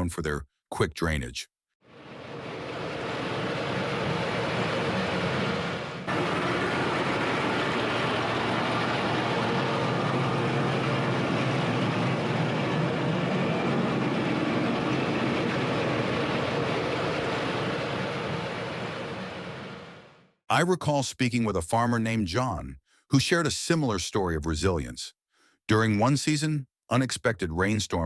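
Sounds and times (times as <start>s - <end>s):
heavy farm machinery running: 1.9s - 20.1s.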